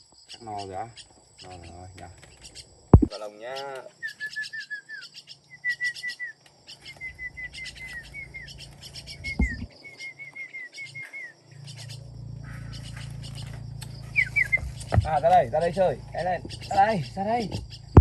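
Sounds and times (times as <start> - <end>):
starlings chirping: 0.0 - 18.0
low steady hum: 6.9 - 18.0
thump: 9.4 - 9.7.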